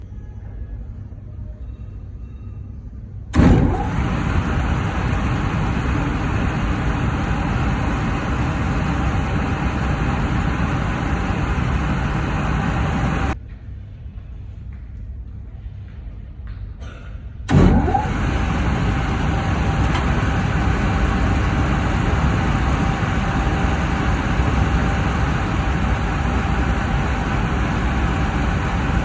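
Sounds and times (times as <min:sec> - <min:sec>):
motor machine running: 0:03.4 - 0:13.4, 0:17.5 - 0:29.0.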